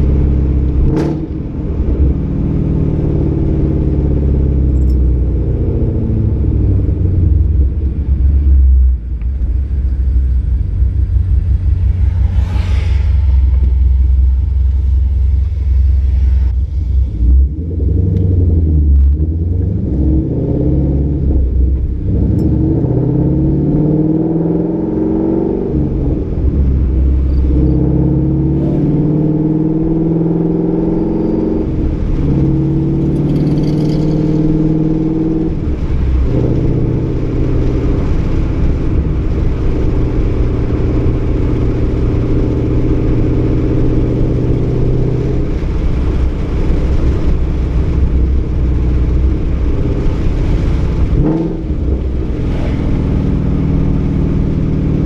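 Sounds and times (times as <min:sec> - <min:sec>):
car engine accelerating through gears: 0:00.0 - 0:55.0.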